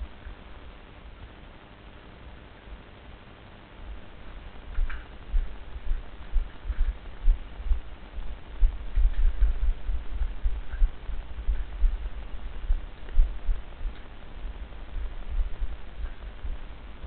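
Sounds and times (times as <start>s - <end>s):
faint rustle: 0.0s - 17.0s
rumbling on microphone: 3.9s - 17.0s.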